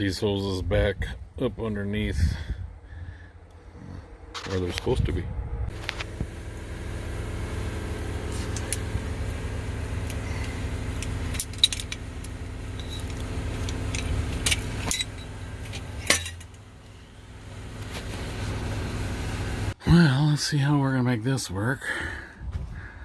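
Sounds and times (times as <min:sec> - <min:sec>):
engine idling: 0:05.6 - 0:19.8
metal tools clinking: 0:10.1 - 0:16.6.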